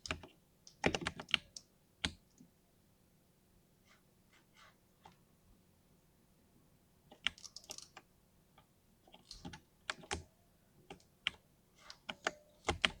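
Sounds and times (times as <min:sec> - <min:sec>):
mechanical keyboard typing: 0:00.0 - 0:02.2, 0:07.1 - 0:08.0, 0:09.1 - 0:10.2, 0:10.9 - 0:13.0.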